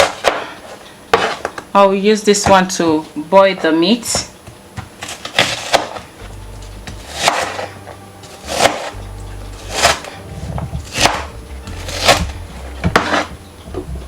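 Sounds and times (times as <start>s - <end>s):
knife cutting on chopping board: 0.0s - 1.5s, 5.0s - 6.1s, 6.9s - 9.0s, 9.6s - 13.4s.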